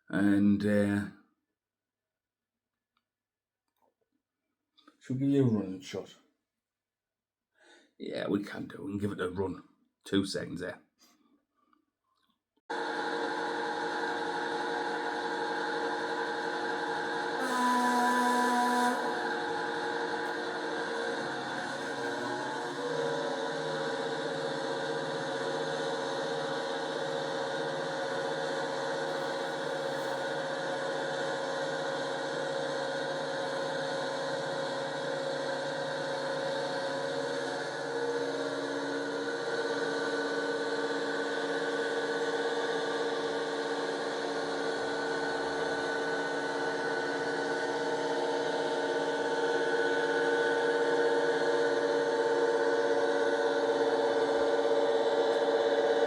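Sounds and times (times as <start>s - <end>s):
model locomotive droning: 12.7s - 56.0s.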